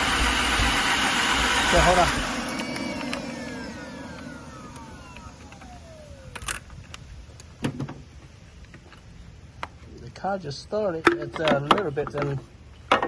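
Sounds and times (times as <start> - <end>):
engine whine spinning down: 0.0 - 7.6.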